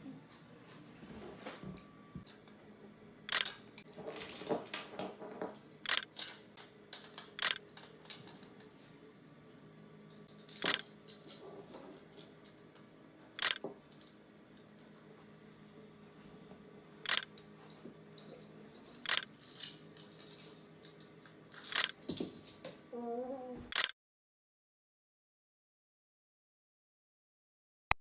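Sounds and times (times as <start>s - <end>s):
camera shutter clicks: 7.4s - 7.6s, 13.4s - 13.6s, 17.1s - 17.3s, 19.1s - 19.3s.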